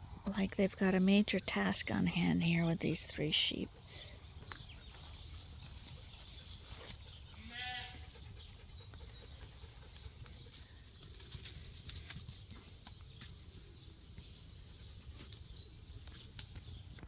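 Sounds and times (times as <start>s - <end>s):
faint outdoor background: 0.0s - 17.0s
sheep bleating: 7.4s - 8.1s.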